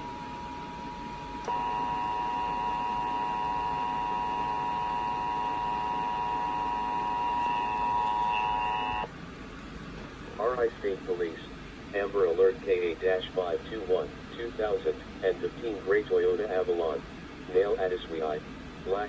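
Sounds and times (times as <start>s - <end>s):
dual-tone alarm: 0.0s - 9.1s
faint steady tone: 0.0s - 9.1s.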